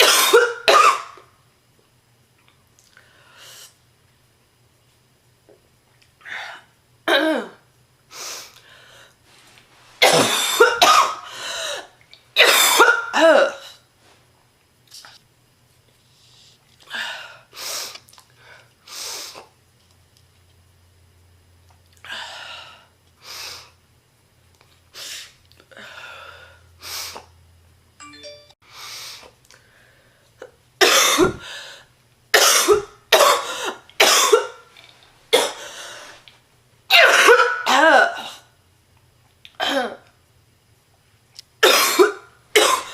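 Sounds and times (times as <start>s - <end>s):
woman coughing harshly: 0.0s - 1.3s, 7.1s - 7.6s, 10.0s - 13.8s, 30.8s - 31.5s, 32.3s - 34.7s, 35.3s - 35.6s, 36.9s - 38.5s, 39.6s - 40.1s, 41.6s - 42.9s
woman breathing heavily: 8.1s - 9.2s, 11.2s - 11.9s, 16.3s - 19.4s, 22.0s - 23.8s, 25.0s - 27.3s, 28.7s - 30.4s, 31.3s - 31.9s, 35.6s - 36.2s
woman breathing in: 28.7s - 30.3s.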